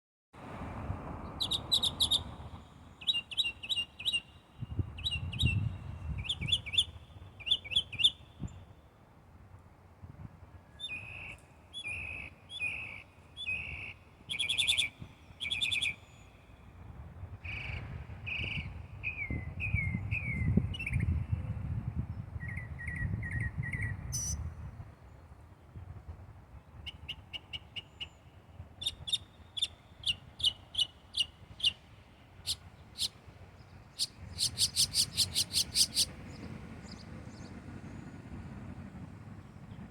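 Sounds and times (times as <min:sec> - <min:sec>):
bird chirping: 0:01.3 - 0:08.6, 0:10.8 - 0:16.4, 0:26.9 - 0:37.5.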